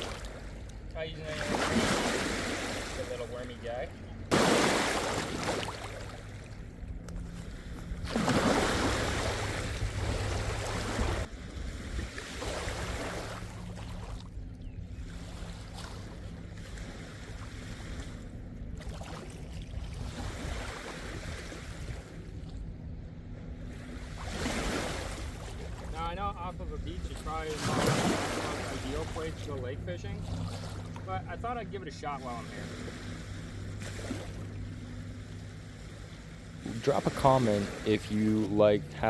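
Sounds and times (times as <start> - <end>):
waves washing onto beach: 4.3 - 6.3.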